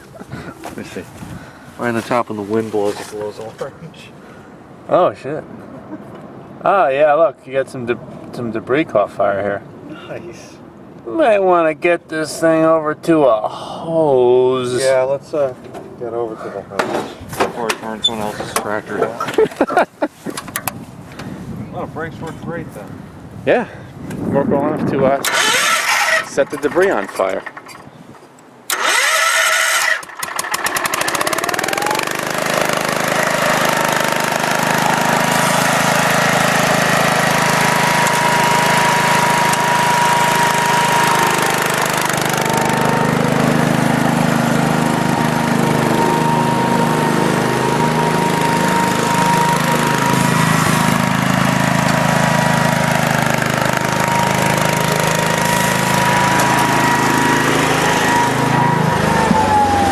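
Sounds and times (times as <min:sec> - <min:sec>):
engine starting and running: 0:25.1 - 0:27.9, 0:28.7 - 0:59.9.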